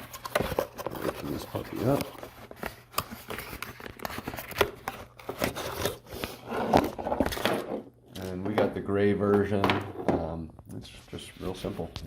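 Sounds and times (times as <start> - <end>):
packaging crinkling and tearing: 0.0 - 7.4.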